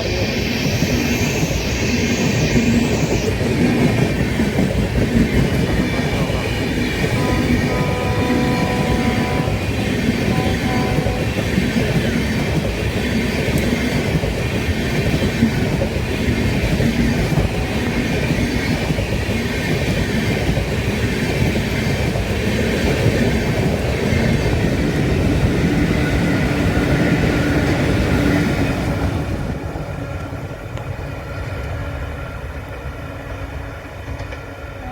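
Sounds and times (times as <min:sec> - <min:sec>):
train wheels clattering over joints: 0:02.3 - 0:29.0
train horn: 0:03.5 - 0:04.2, 0:06.0 - 0:11.7, 0:17.1 - 0:18.4, 0:34.6 - 0:34.9.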